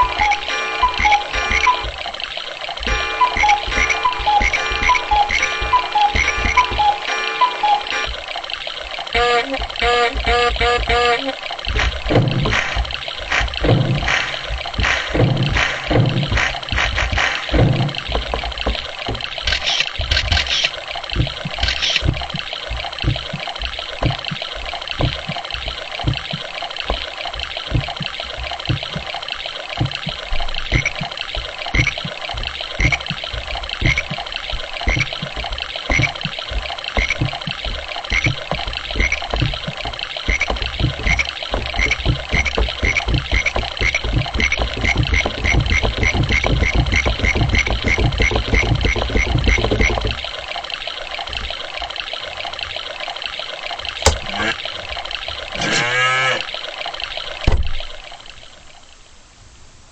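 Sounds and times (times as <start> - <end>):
gurgling running water: 0.0 - 59.1
low knocks: 11.7 - 20.5, 21.1 - 29.2, 29.8 - 50.3.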